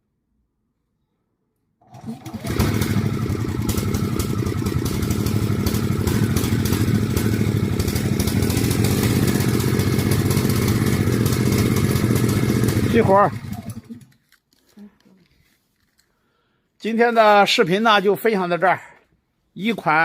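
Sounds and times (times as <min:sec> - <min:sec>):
generator engine starting and running: 0:01.8 - 0:14.2.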